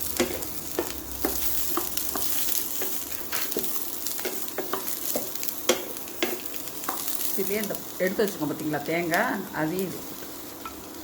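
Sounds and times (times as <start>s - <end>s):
food sizzling in oil: 0.0s - 11.0s.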